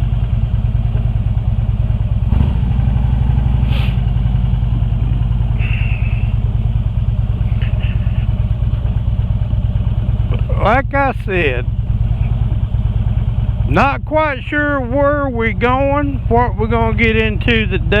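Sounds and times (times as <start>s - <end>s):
motorcycle engine pulling away: 0.3s - 13.9s.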